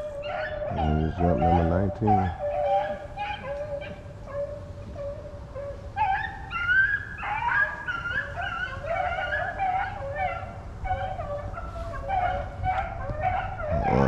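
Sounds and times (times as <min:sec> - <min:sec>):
hounds baying together: 0:00.0 - 0:14.0.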